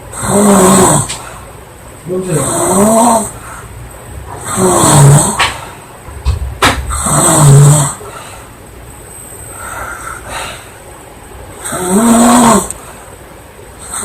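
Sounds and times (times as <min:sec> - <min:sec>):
woman snoring loudly: 0:00.1 - 0:01.1, 0:02.4 - 0:03.3, 0:04.4 - 0:05.6, 0:06.9 - 0:08.0, 0:11.6 - 0:12.7
soft breath: 0:09.4 - 0:10.8.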